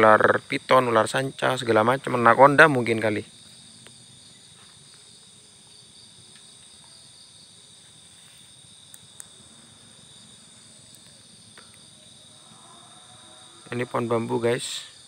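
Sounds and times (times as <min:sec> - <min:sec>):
crickets and insects chirring: 0:00.0 - 0:15.0
faint ticks: 0:08.8 - 0:09.4, 0:10.8 - 0:11.9.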